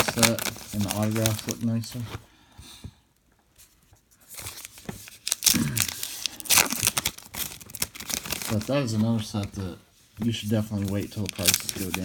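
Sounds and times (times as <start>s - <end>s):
card pack wrapper tearing and crinkling: 0.0s - 2.0s, 4.3s - 9.3s, 10.8s - 12.0s.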